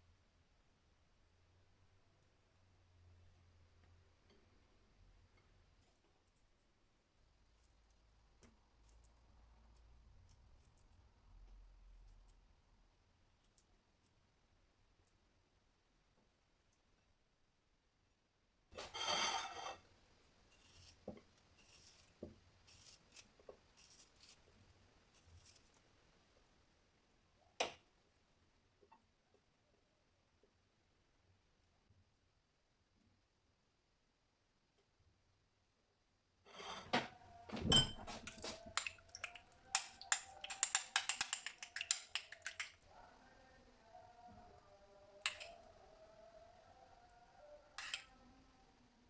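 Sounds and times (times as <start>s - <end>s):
objects being handled: 36.5s - 42.8s.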